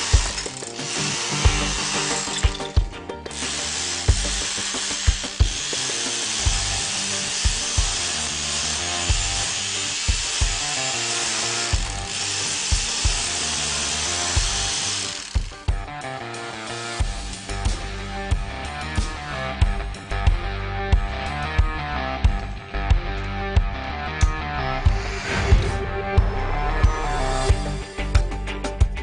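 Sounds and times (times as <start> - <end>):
hammer drill drilling: 0.0 - 15.8
background music with steady beat: 0.0 - 29.0.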